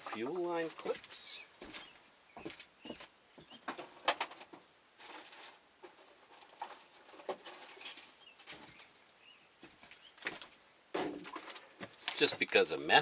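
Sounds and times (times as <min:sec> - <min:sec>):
faint bird chirps: 0:01.2 - 0:03.7, 0:07.6 - 0:10.3.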